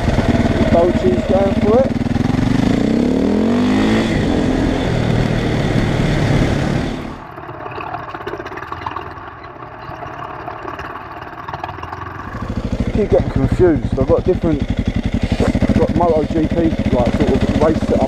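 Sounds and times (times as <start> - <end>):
motorcycle engine accelerating: 0.0 - 7.2, 12.0 - 18.0.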